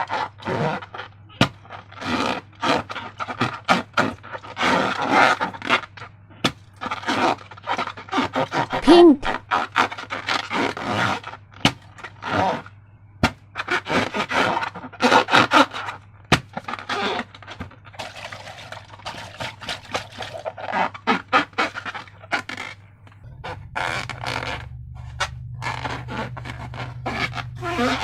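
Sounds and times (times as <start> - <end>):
slime squelching by hand: 6.8 - 9.5.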